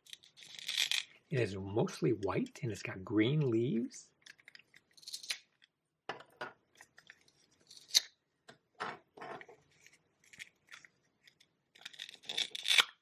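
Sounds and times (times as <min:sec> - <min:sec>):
plastic toy rustles and clicks: 0:00.0 - 0:01.3, 0:04.1 - 0:05.8, 0:06.6 - 0:08.1, 0:09.0 - 0:13.0.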